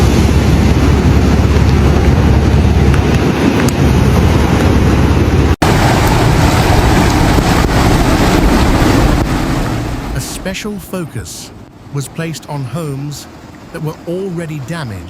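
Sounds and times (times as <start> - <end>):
wind buffeting microphone: 0.0 - 10.6
floodwater rushing: 0.0 - 15.0.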